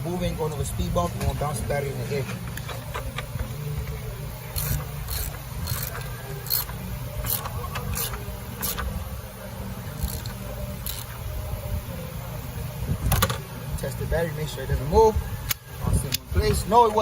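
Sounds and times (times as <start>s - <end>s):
steady low hum: 0.0s - 17.0s
ratchet wrench clicking: 4.5s - 8.9s, 10.0s - 11.2s.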